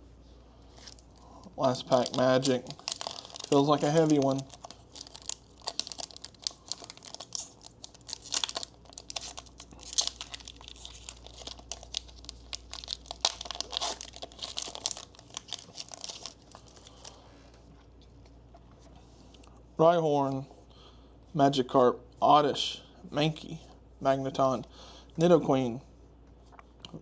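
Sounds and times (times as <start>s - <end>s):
foil wrapper crinkling and tearing: 0.8s - 17.2s.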